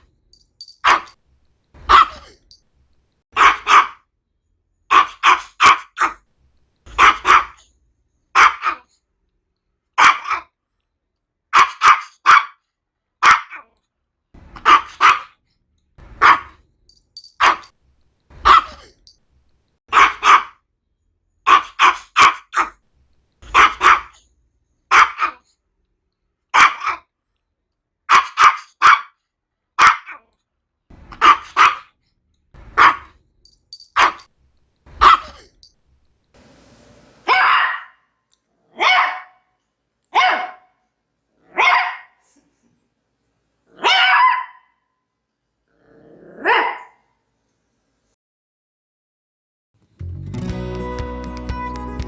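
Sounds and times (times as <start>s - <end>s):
small dog barking sharply: 0.8s - 1.2s, 1.8s - 2.4s, 3.4s - 4.0s, 4.9s - 6.2s, 6.9s - 7.6s, 8.4s - 8.9s, 10.0s - 10.5s, 11.5s - 12.6s, 13.2s - 13.7s, 14.6s - 15.3s, 16.1s - 16.6s, 17.3s - 17.7s, 18.4s - 18.9s, 19.9s - 20.6s, 21.5s - 22.8s, 23.4s - 24.2s, 24.9s - 25.4s, 26.5s - 27.0s, 28.1s - 29.2s, 29.8s - 30.2s, 31.1s - 31.9s, 32.7s - 33.1s, 33.9s - 34.3s, 35.0s - 35.5s, 37.2s - 38.0s, 38.8s - 39.4s, 40.1s - 40.8s, 41.5s - 42.2s, 43.7s - 44.7s, 46.4s - 47.0s.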